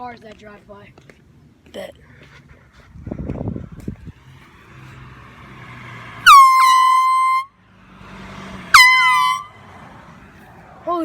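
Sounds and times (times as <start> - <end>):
car driving past: 3.3 - 11.0
air horns blasting: 5.8 - 7.6, 8.5 - 9.9.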